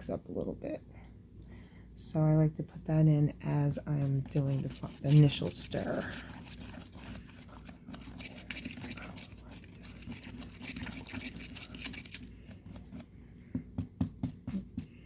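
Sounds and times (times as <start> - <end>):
stir stick scraping a cup: 3.8 - 13.0.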